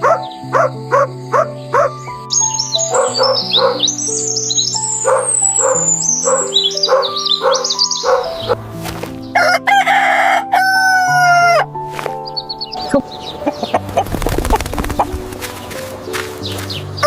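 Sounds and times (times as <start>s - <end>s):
background music with held notes: 0.0s - 17.0s
rooster crowing: 9.4s - 11.7s.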